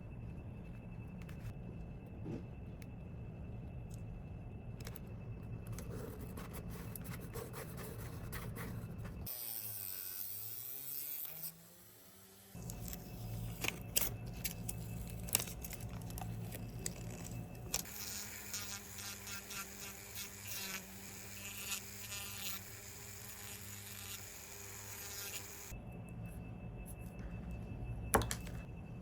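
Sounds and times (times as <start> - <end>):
small electric motor humming: 9.2 - 25.8.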